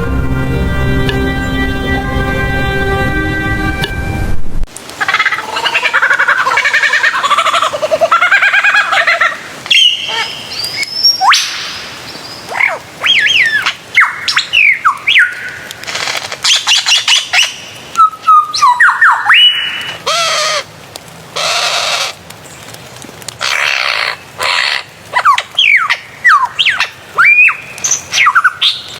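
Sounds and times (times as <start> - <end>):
bird chirps and whistles: 13.0 - 15.5, 16.4 - 19.8, 25.6 - 28.9
harsh raspy bird screeches: 21.4 - 22.2, 23.4 - 26.0.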